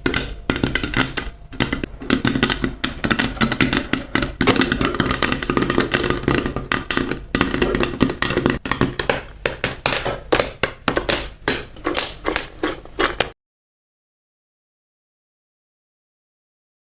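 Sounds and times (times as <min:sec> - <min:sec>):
popcorn popping: 0:00.0 - 0:13.4.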